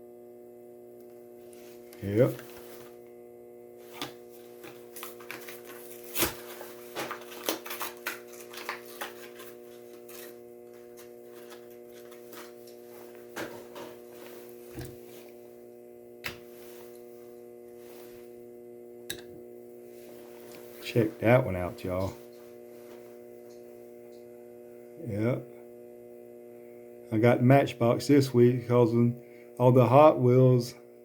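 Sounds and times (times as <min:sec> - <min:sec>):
steady electrical hum: 0:00.0 - 0:31.0
packaging crinkling and clicking: 0:04.0 - 0:10.4.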